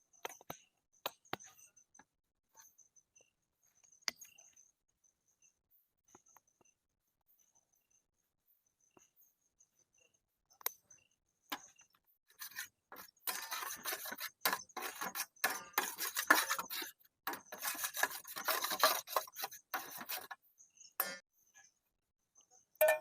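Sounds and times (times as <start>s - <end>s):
rubbing and scraping strokes: 12.3s - 20.4s.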